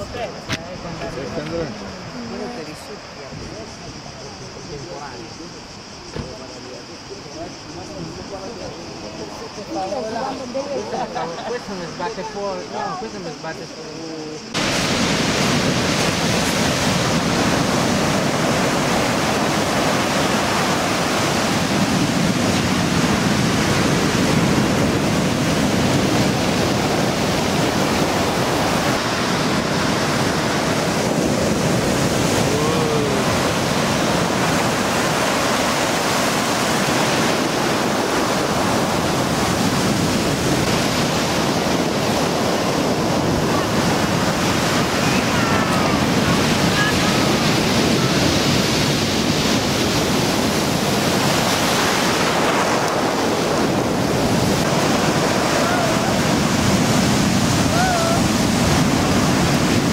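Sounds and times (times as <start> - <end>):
waves breaking on pebble beach: 14.4 - 59.9.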